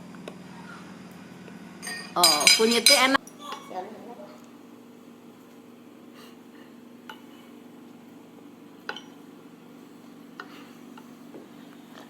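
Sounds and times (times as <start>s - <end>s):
steady low hum: 0.0s - 12.0s
drinking cup clinking: 1.8s - 3.8s, 8.8s - 9.2s.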